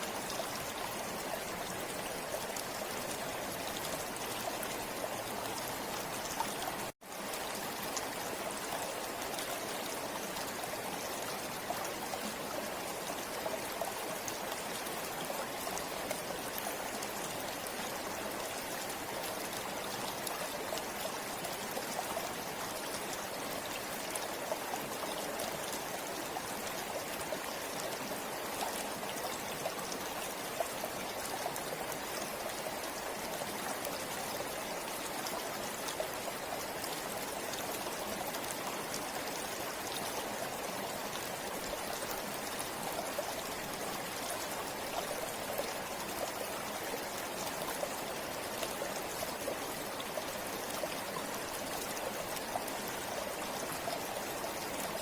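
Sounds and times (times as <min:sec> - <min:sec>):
river water rushing: 0:00.0 - 0:55.0.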